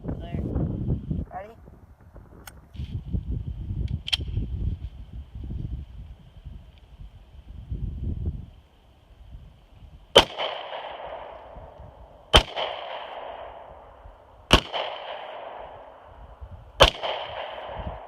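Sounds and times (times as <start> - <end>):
pistol shots with ringing tail: 10.1 - 16.1, 16.8 - 18.0.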